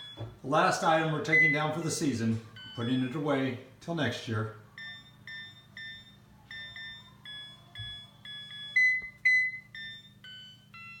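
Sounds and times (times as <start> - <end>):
electronic beeping tune: 4.8 - 11.0.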